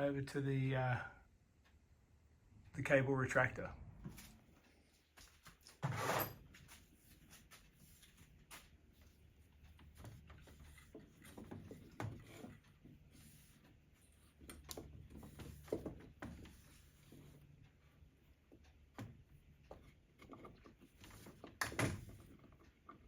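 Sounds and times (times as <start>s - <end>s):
faint clicks and light knocks: 6.5s - 23.0s.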